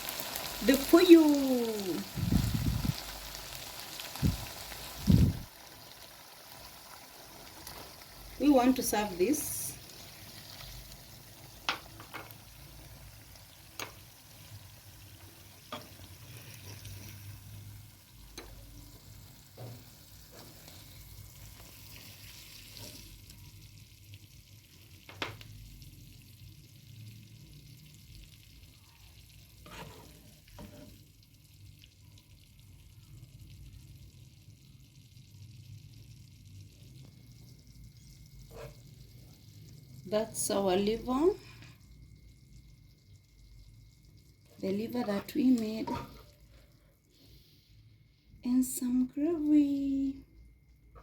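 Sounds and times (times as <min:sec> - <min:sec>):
faint sizzle: 0:00.0 - 0:51.0
spoon scraping and clinking on pot: 0:45.8 - 0:46.3.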